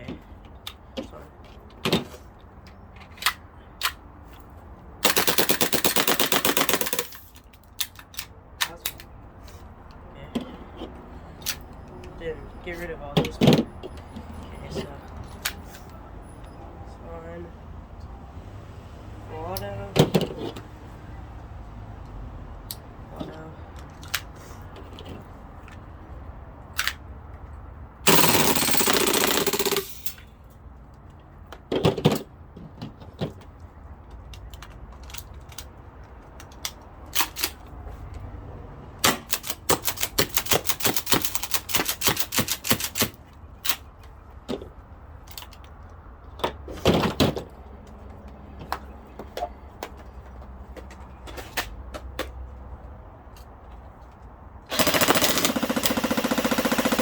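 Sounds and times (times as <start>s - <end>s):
gun handling clicks: 2.7s - 4.0s, 5.1s - 9.1s, 23.8s - 24.4s, 26.7s - 27.0s, 34.3s - 37.7s
airsoft gun bursts: 5.0s - 7.3s, 28.1s - 30.2s, 54.7s - 57.0s.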